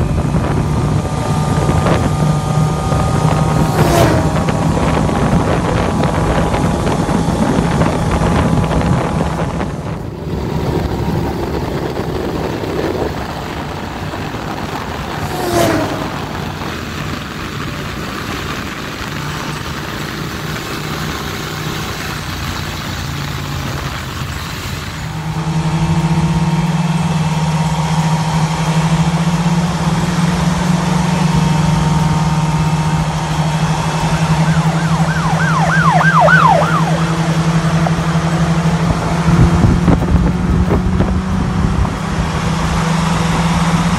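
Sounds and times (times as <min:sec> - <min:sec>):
vehicle engine droning: 0:00.0 - 0:43.9
siren wailing: 0:33.6 - 0:38.2.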